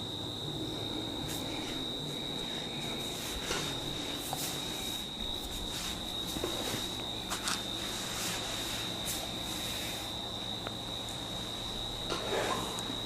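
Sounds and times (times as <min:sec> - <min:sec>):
steady high-pitched whine: 0:00.0 - 0:13.0
hands rubbing over hair: 0:02.4 - 0:10.1.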